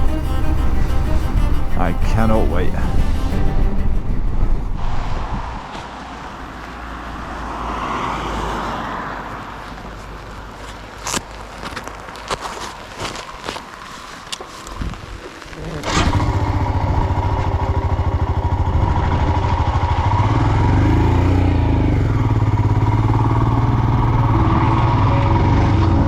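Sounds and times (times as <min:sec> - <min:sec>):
single-cylinder engine running: 0:15.8 - 0:26.0.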